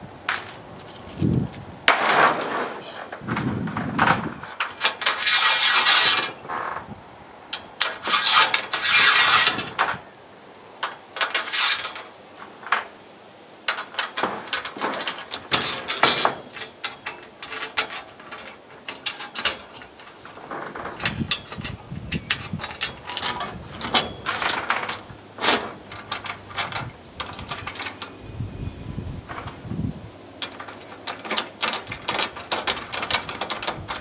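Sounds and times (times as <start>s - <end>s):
scraping and rubbing strokes: 1.9s - 6.8s, 7.8s - 10.0s, 11.2s - 12.7s, 14.1s - 28.1s
sharp clicks and knocks: 13.7s - 28.2s, 30.4s - 34.0s.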